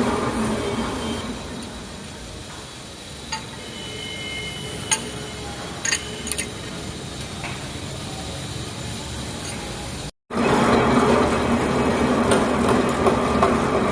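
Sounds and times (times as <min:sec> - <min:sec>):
workshop machine noise: 0:00.0 - 0:13.9
sharp metallic clinks: 0:04.9 - 0:05.2, 0:05.8 - 0:06.6.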